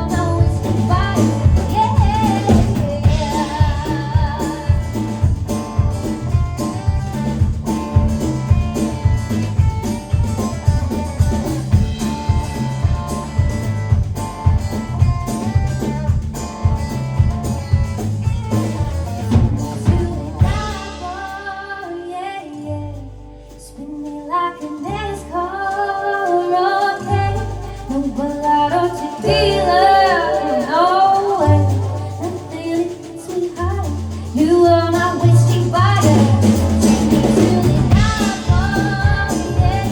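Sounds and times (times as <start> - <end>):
woman singing: 0.0 - 7.8, 19.5 - 39.9
country band playing: 0.0 - 39.9
held bass notes: 0.0 - 39.9.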